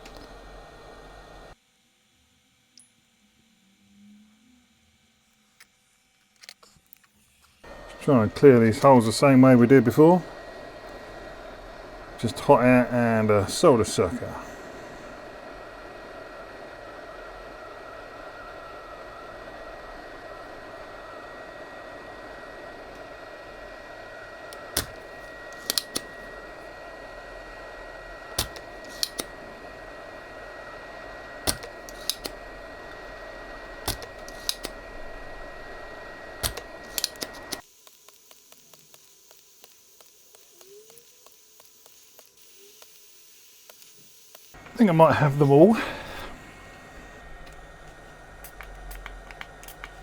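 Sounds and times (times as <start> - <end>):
hot air blower with high whine: 0.0 - 5.3, 7.6 - 50.0
solder sucker snapping: 22.4 - 44.7, 47.2 - 50.0.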